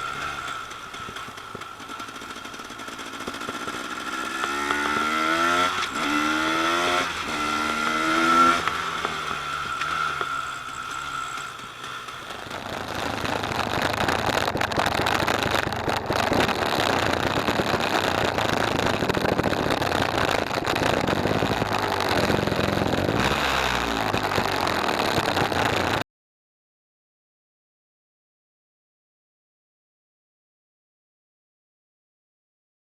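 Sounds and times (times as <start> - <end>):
two-stroke engine running: 0.0 - 26.0.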